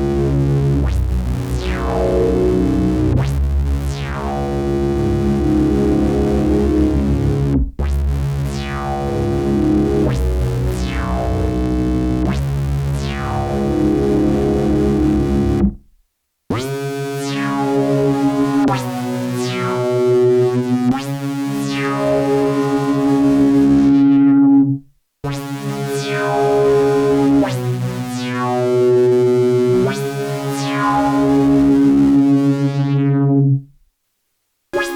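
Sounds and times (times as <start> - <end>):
synthesizer chords with filter sweeps: 0.0 - 15.8, 16.6 - 33.6
synthesizer chords with falling sweeps: 25.4 - 33.6.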